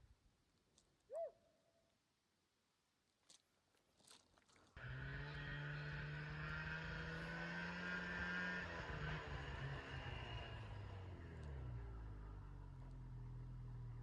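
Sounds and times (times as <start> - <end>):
faint crunches: 0.4 - 1.2, 3.0 - 4.8.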